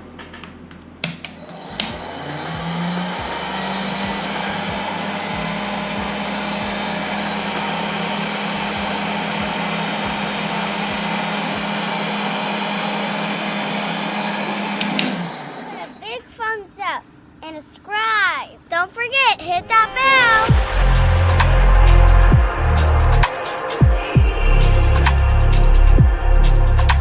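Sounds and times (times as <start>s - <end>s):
small blower motor running: 1.2s - 17.4s.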